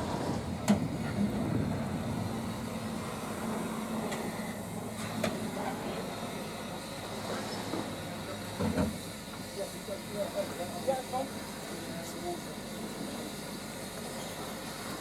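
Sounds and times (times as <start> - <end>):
train rumbling: 0.0 - 6.4.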